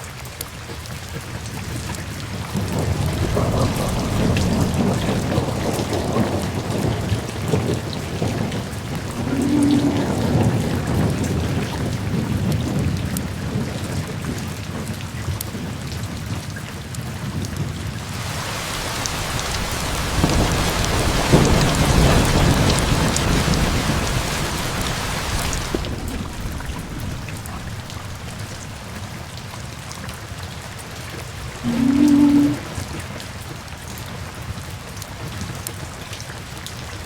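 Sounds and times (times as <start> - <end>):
rain on a wooden roof: 0.0 - 37.0
thunder rumbling: 2.4 - 14.2, 18.0 - 33.2.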